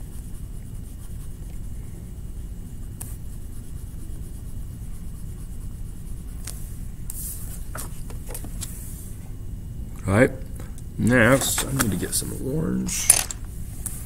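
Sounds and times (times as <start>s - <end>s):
coloring strokes on paper: 0.0s - 2.0s, 2.8s - 7.6s.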